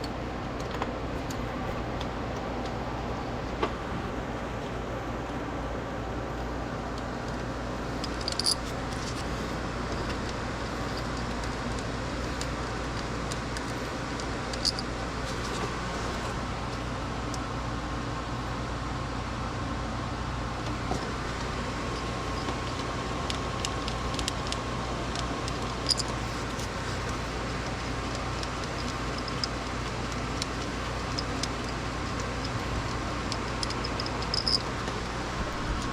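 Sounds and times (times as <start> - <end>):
steady background hum: 0.0 - 35.9
light metallic clinks: 33.3 - 34.8.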